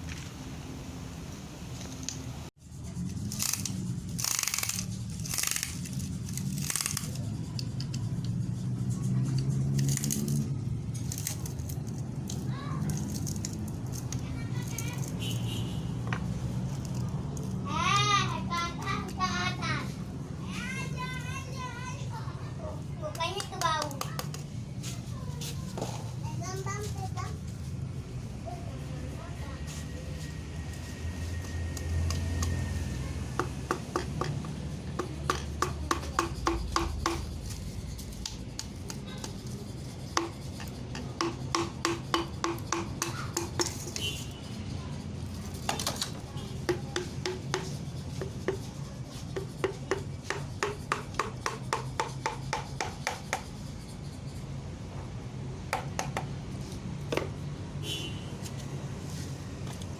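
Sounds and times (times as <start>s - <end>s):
sharp metallic clicks of hand tools: 3.2s - 8.4s, 23.1s - 24.5s, 31.4s - 44.2s.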